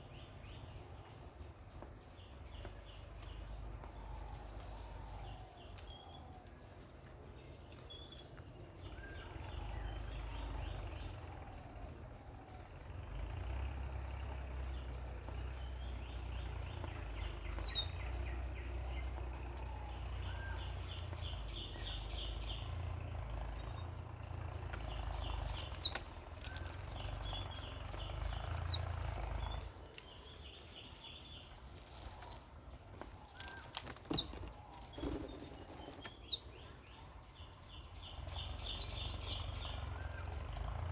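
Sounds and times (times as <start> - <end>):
pulsing insect trill: 8.9 - 40.9
bird chirps: 15.3 - 32.5, 33.4 - 40.8.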